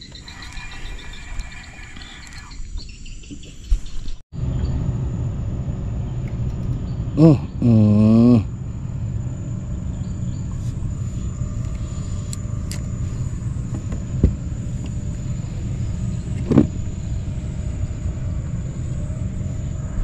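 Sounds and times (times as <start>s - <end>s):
low engine rumble: 4.4s - 20.0s
short vocal sound: 7.2s - 8.5s.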